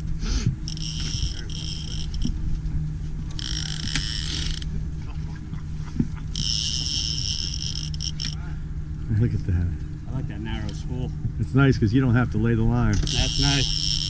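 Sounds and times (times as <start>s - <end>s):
fishing reel whirring: 0.0s - 4.9s, 5.7s - 8.6s, 12.6s - 14.0s
steady low hum: 0.0s - 14.0s.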